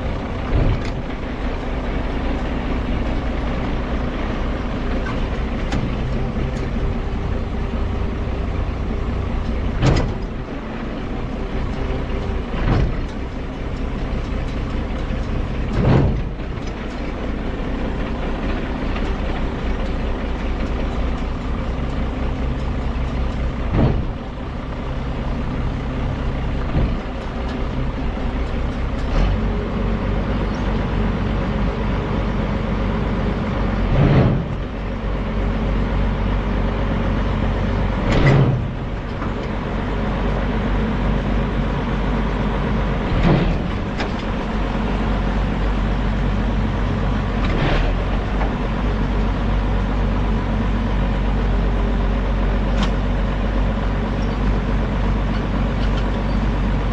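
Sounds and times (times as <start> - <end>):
heavy vehicle engine humming: 0.0 - 56.9
short clunks or knocks: 0.4 - 1.2, 9.4 - 10.6, 12.5 - 13.3, 15.6 - 17.0, 23.6 - 24.2, 33.8 - 34.8.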